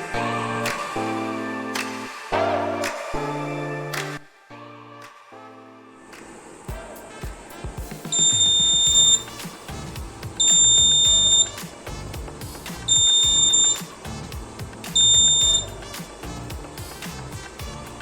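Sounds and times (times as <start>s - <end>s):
background music with a beat: 0.0s - 4.3s, 6.7s - 18.0s
high-pitched buzzer beeping: 8.1s - 9.4s, 10.4s - 11.6s, 12.9s - 13.8s, 15.0s - 15.7s.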